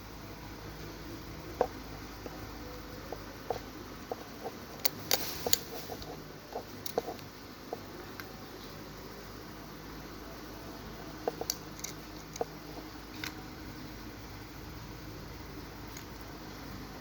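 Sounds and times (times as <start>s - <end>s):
steady low hum: 0.0s - 17.0s
small parts and tools clicking: 3.1s - 8.4s, 11.2s - 13.4s, 15.9s - 16.3s.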